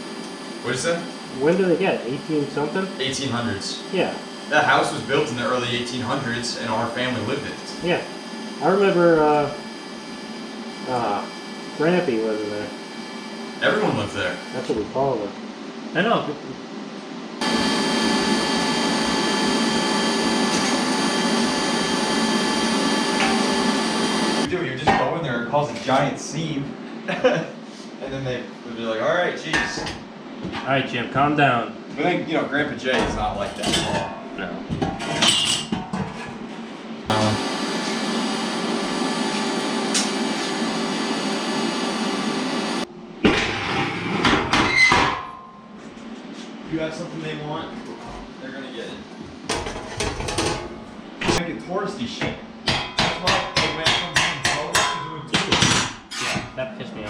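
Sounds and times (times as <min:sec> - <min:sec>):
power tool motor whining: 0:17.4 - 0:24.5, 0:37.1 - 0:42.8.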